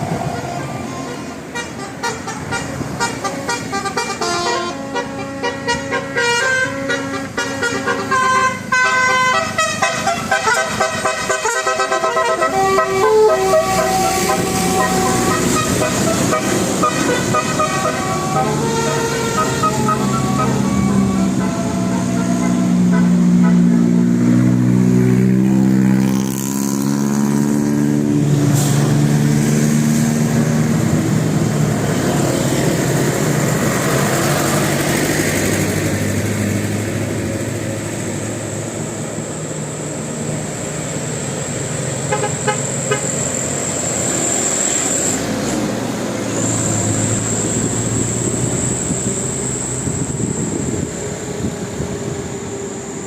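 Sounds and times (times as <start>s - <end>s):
vehicle engine and road noise: 0.0s - 53.0s
multi-tone vehicle horn tune: 0.2s - 24.6s, 41.9s - 43.7s.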